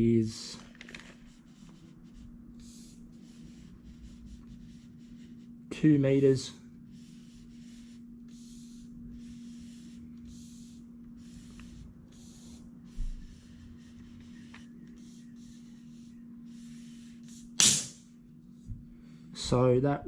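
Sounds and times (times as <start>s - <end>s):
steady low hum: 0.0s - 20.0s
tape measure blade sliding out: 17.6s - 18.0s.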